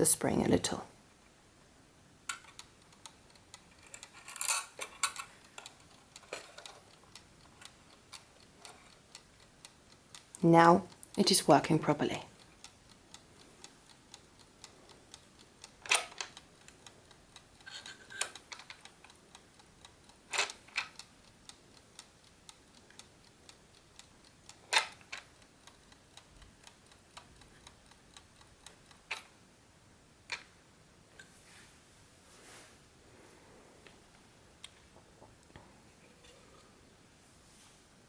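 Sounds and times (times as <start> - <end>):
clock ticking: 2.1 - 30.5.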